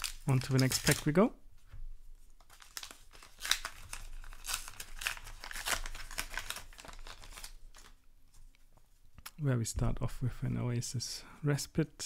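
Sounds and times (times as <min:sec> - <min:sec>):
foil wrapper tearing and crinkling: 0:00.0 - 0:01.2, 0:02.5 - 0:08.0.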